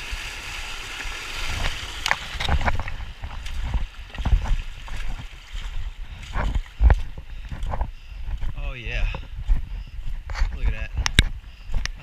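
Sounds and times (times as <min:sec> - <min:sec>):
river water rushing and splashing: 0:00.0 - 0:07.6.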